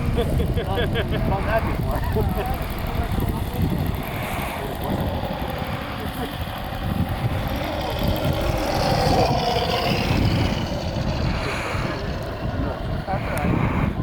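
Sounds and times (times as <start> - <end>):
model airplane engine: 0.0 - 14.0
wind rumbling on microphone: 0.0 - 14.0.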